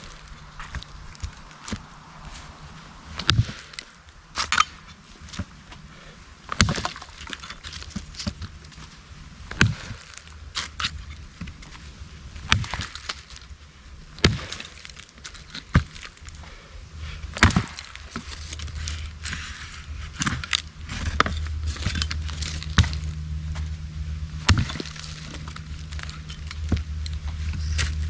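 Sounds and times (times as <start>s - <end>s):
firewood cracks and knocks: 0.0s - 2.0s, 3.2s - 5.8s, 6.5s - 8.9s, 9.5s - 11.8s, 12.4s - 13.5s, 14.1s - 16.6s, 17.3s - 23.7s, 24.4s - 28.0s
low steady hum: 0.0s - 28.0s
sticks crackling and rustling: 0.0s - 28.0s.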